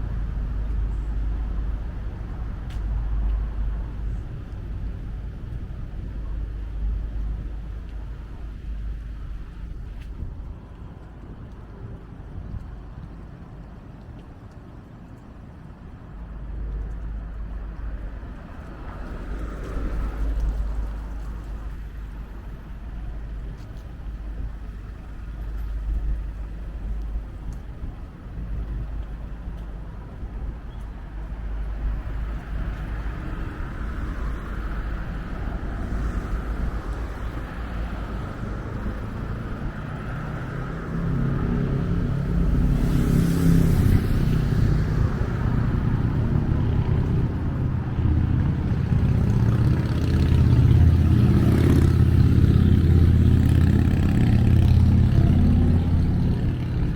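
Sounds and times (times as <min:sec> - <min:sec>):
road traffic rumble: 0:00.0 - 0:56.9
vehicle passing close: 0:31.8 - 0:56.9.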